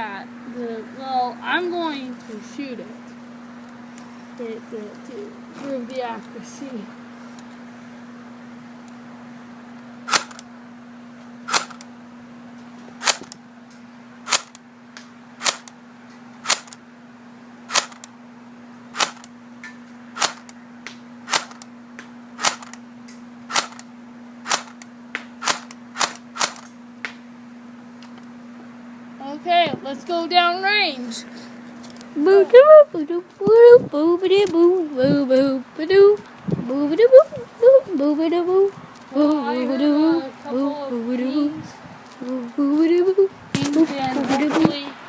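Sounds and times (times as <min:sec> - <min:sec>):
airsoft rifle shots: 0:10.1 - 0:10.5, 0:11.5 - 0:11.9, 0:13.0 - 0:13.4, 0:14.3 - 0:14.6, 0:15.4 - 0:15.8, 0:16.4 - 0:16.8, 0:17.7 - 0:18.1, 0:19.0 - 0:19.3, 0:20.2 - 0:20.6, 0:21.3 - 0:21.7, 0:22.4 - 0:22.8, 0:23.5 - 0:24.8, 0:25.4 - 0:26.7.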